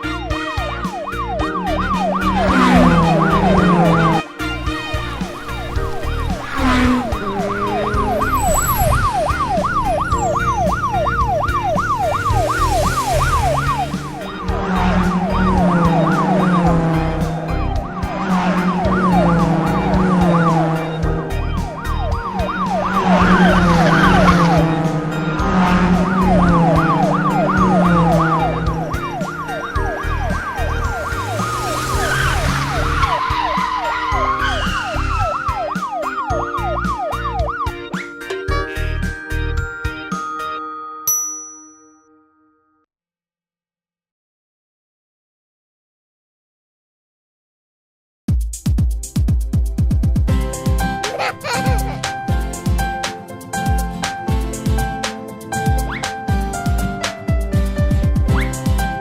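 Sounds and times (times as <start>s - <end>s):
upbeat children's music: 0.0s - 41.0s, 48.4s - 59.0s
yelping siren sound effect: 0.4s - 37.7s, 51.0s - 52.1s.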